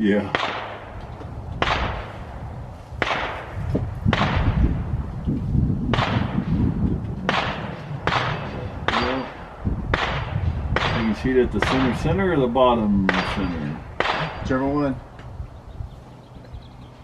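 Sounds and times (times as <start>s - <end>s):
wind rumble on microphone: 0.0s - 17.0s
gunshots with echo: 0.2s - 1.0s, 1.6s - 2.3s, 3.0s - 4.9s, 5.9s - 14.9s.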